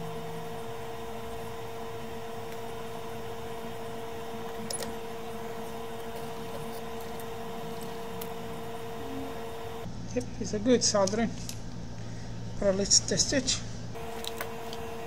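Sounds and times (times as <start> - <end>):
electric blower motor whine: 0.0 - 9.9, 13.9 - 15.0.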